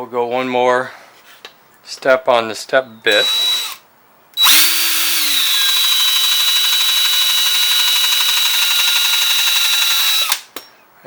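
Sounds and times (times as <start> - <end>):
power drill whining: 3.1 - 3.8, 4.4 - 10.4.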